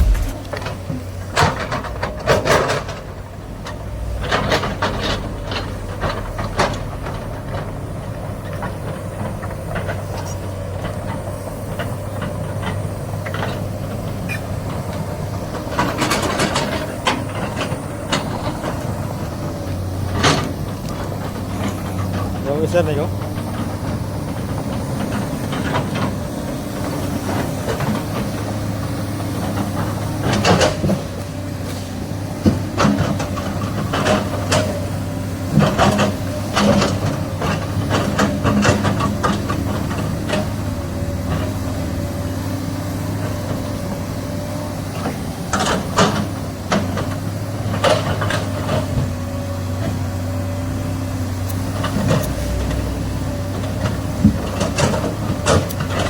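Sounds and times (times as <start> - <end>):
metal knocks and clanks: 0.0 - 0.8
excavator diesel engine running: 0.0 - 56.0.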